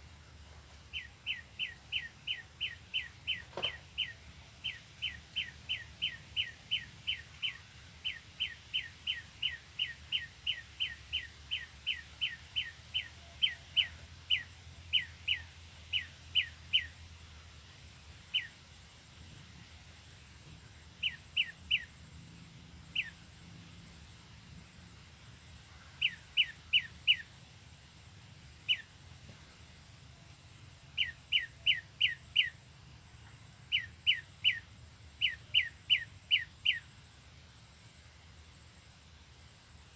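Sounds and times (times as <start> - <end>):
steady high hiss: 0.0 - 39.9
bird chip calls: 33.7 - 34.6, 35.2 - 36.8.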